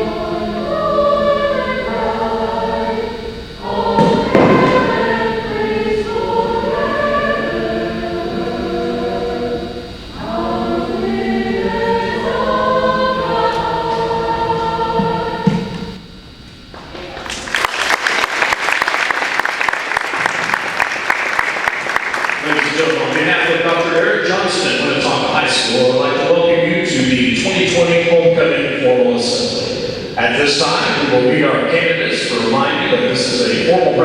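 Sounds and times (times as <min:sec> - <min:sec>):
choir singing: 0:00.0 - 0:16.0, 0:22.2 - 0:34.0
audience clapping: 0:16.7 - 0:24.2.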